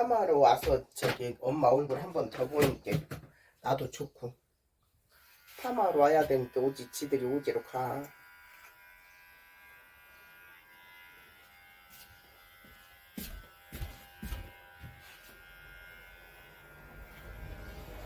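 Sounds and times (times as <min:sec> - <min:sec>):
electric hair clippers buzzing: 0:05.2 - 0:18.0.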